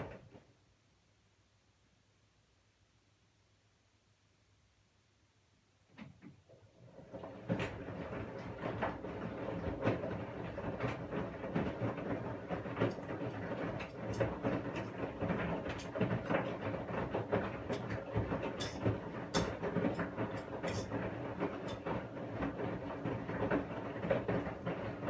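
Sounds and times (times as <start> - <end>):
washing machine churning: 6.1 - 25.0
washing machine knocking: 7.0 - 25.0.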